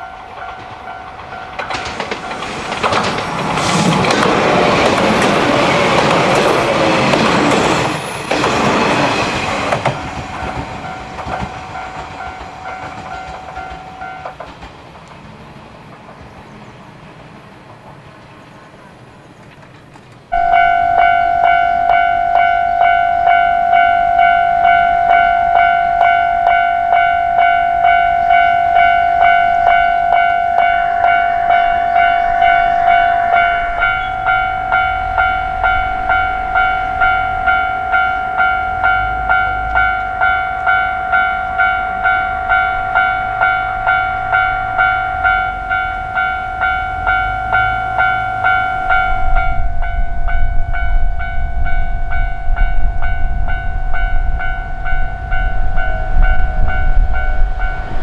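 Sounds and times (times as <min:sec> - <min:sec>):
train rumble: 0:00.0 - 0:58.0
level crossing electronic bell: 0:20.4 - 0:57.4.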